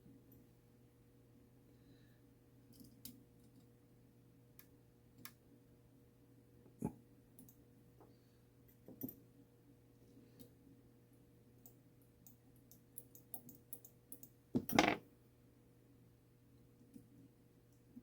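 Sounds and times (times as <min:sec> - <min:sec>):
light clicks of small metal parts: 0:02.7 - 0:03.8, 0:06.8 - 0:07.6, 0:08.7 - 0:09.2, 0:11.6 - 0:14.8.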